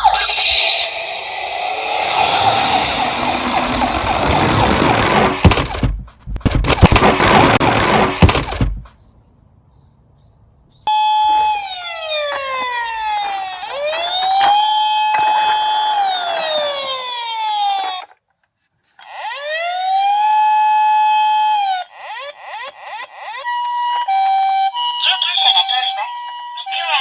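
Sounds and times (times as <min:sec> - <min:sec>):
siren sound effect wailing: 0:00.0 - 0:05.6, 0:10.9 - 0:18.1, 0:19.1 - 0:27.0
toy cars rolling and clattering: 0:02.0 - 0:05.9, 0:12.3 - 0:19.1.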